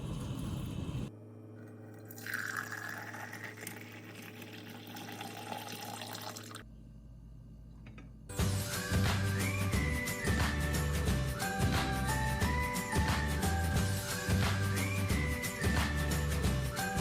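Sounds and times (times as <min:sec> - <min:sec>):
low hum: 0:00.0 - 0:01.1
water pouring into vessel: 0:01.9 - 0:06.6
music: 0:08.3 - 0:17.0.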